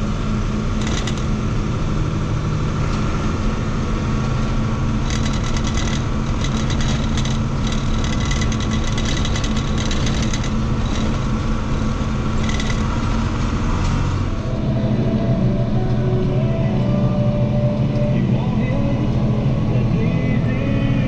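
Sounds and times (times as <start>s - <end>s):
diesel engine running: 0.0s - 21.0s
fast crackling rattle: 0.8s - 1.3s, 5.0s - 13.1s.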